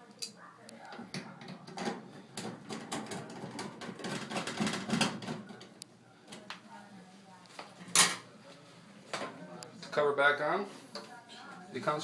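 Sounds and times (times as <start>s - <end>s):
dryer parts clicking and rattling: 0.9s - 6.5s.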